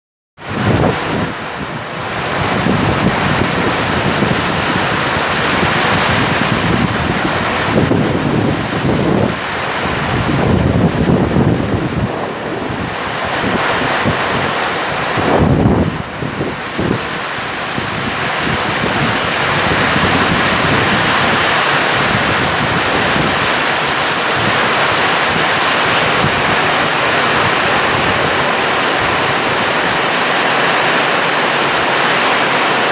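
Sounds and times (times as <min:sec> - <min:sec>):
wind buffeting microphone: 0:00.4 - 0:32.9
heavy rain hiss: 0:00.5 - 0:32.9
low rush: 0:22.8 - 0:32.3.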